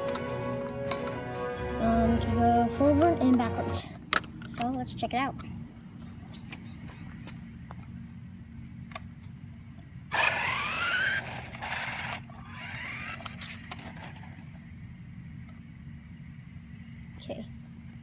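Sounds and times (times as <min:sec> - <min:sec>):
electric motor whining: 0:10.1 - 0:14.3
rush of wheel noise: 0:10.1 - 0:14.3.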